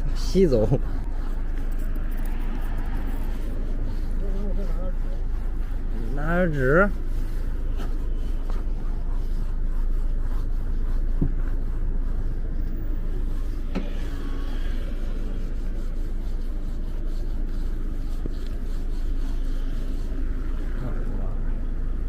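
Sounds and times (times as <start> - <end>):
low rumble: 0.0 - 6.3.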